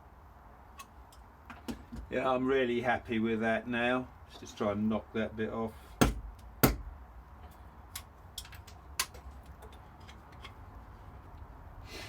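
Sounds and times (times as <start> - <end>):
tools and wood clicking: 7.4 - 10.6.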